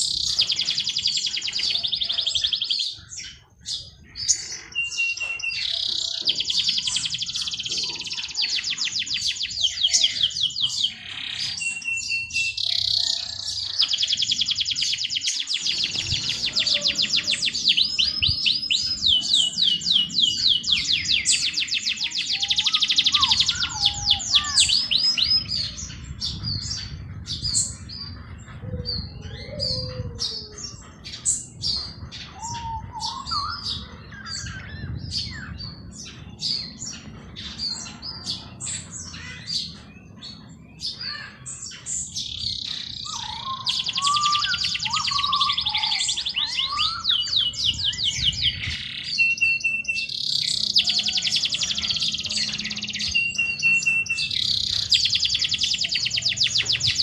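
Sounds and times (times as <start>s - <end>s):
songbirds singing and chirping: 0.0s - 57.0s
fast high rattling bird trill: 4.3s - 28.2s, 31.2s - 57.0s.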